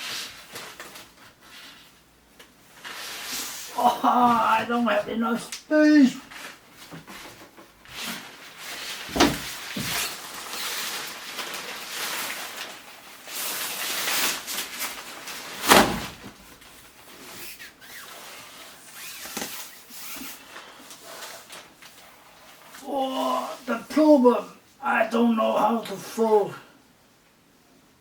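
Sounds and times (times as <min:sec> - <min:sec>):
fabric and sprung frame rustling: 0:02.5 - 0:24.4.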